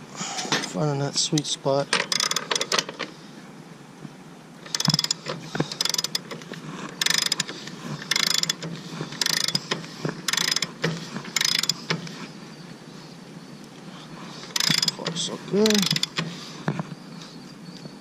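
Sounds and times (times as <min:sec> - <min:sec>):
ratchet wrench clicking: 0:02.1 - 0:02.8, 0:04.7 - 0:06.3, 0:07.0 - 0:08.6, 0:09.2 - 0:09.7, 0:10.3 - 0:10.8, 0:11.4 - 0:11.9, 0:14.5 - 0:16.2.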